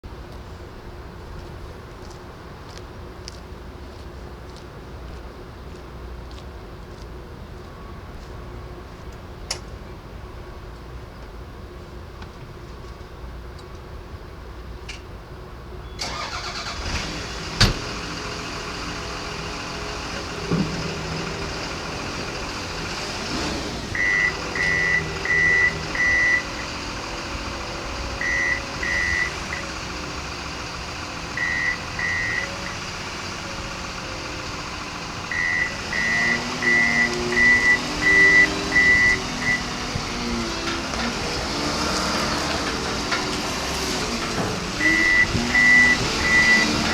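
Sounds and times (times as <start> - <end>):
diesel engine starting and running: 15.9 - 46.9
reversing alarm beeps: 24.0 - 26.6, 28.2 - 29.8, 31.4 - 32.8, 35.3 - 39.7, 44.8 - 46.9.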